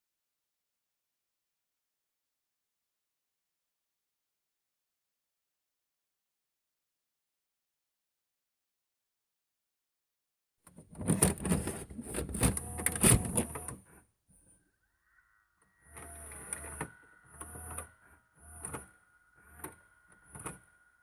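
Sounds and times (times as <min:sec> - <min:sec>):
faint steady machine whine: 0:15.2 - 0:21.0.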